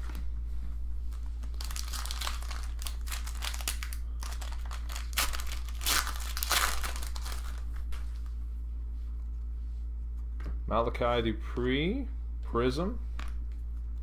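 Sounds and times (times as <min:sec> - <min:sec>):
steady low hum: 0:00.0 - 0:14.0
card wrappers crinkling: 0:01.1 - 0:08.4.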